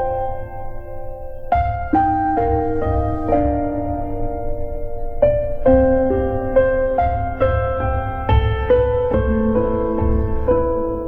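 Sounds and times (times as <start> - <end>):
slow sad piano music: 0.0 - 11.0
sustained low bass: 1.8 - 7.3.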